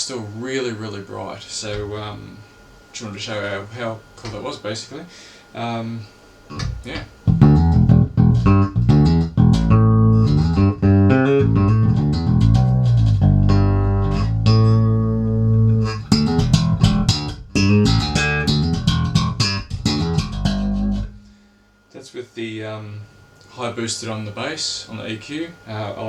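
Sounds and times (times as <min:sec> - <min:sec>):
electric bass plucked notes: 0:06.5 - 0:21.4.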